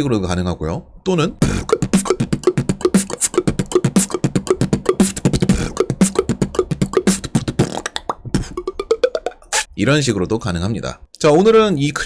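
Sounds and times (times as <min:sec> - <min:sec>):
beatbox kicks and mouth ticks: 0:01.4 - 0:09.7
beatboxing tongue clicks: 0:01.4 - 0:09.7.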